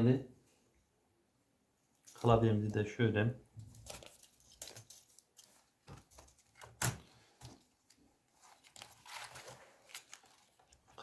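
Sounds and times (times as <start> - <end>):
soft rustle: 3.6 - 11.0.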